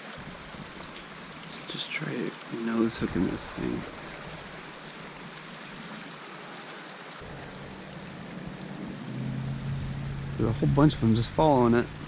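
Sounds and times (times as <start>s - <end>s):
flowing creek water: 0.0s - 12.0s
low rumble: 7.2s - 12.0s.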